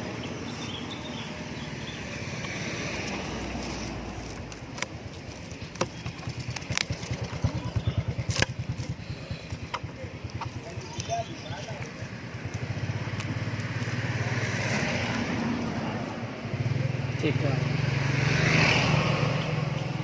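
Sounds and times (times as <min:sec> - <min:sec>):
engine low pulsing: 0:03.0 - 0:14.1.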